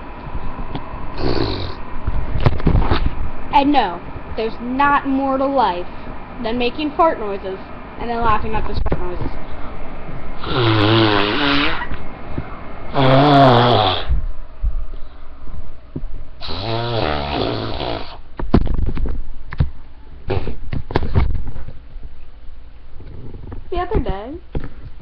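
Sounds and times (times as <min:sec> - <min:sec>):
raspberries blown through lips: 0:10.4 - 0:12.0, 0:20.2 - 0:20.7.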